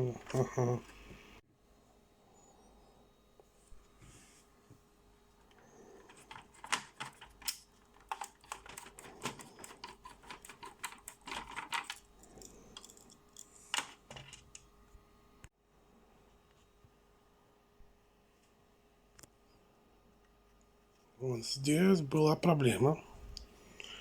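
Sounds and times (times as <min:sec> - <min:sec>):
small parts clicking and tapping: 0:05.5 - 0:14.7.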